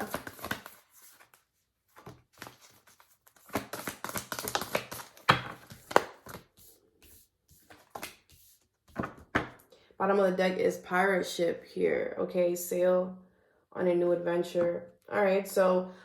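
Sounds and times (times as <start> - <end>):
cards shuffling: 0.0 - 9.6.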